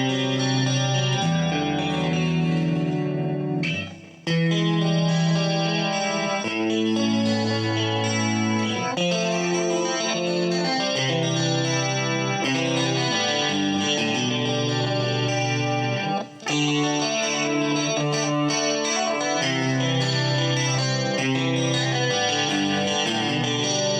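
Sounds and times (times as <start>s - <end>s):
clean electric guitar chords: 0.0s - 23.9s.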